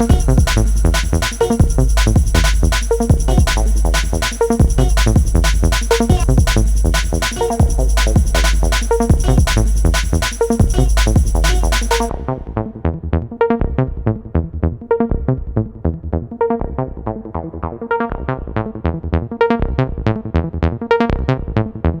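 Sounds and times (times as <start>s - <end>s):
electronic music: 0.0s - 12.9s.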